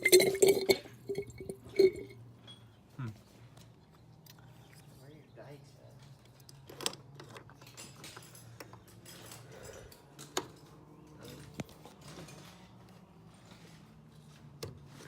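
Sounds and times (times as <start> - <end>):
low steady hum: 0.0 - 3.1
metal parts clicking and clinking: 6.0 - 12.5.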